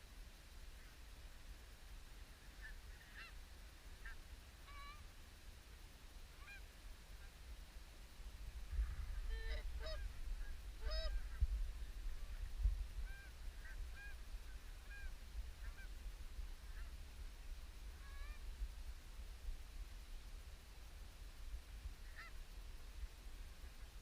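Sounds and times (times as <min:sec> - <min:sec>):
geese honking: 0:08.8 - 0:11.4, 0:12.2 - 0:17.0, 0:18.0 - 0:18.4, 0:22.0 - 0:22.4.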